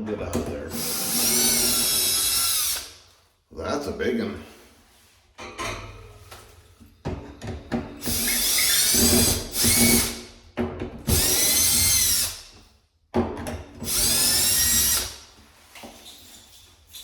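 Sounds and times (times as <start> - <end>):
power drill motor whine: 0.8 - 3.0, 11.1 - 12.4, 13.9 - 15.2.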